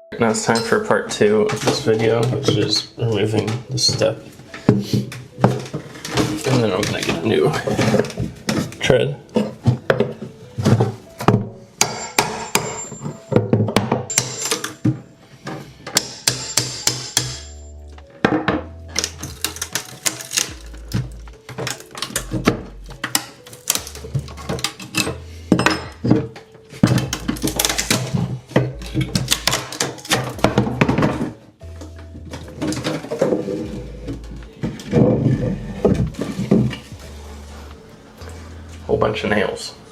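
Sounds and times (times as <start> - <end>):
background music with bass line: 17.4 - 19.7, 20.3 - 39.4.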